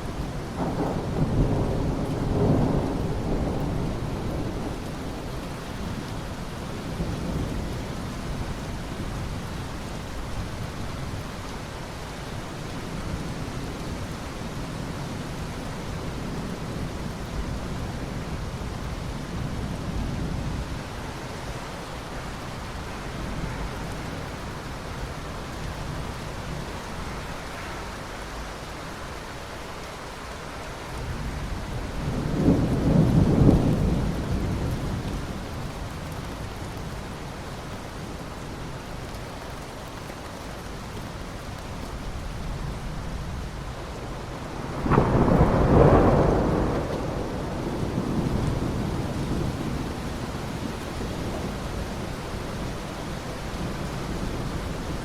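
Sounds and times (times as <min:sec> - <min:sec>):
steady rain: 0:00.0 - 0:55.0
thunder rumbling: 0:00.6 - 0:06.1, 0:31.0 - 0:36.4, 0:44.2 - 0:55.0.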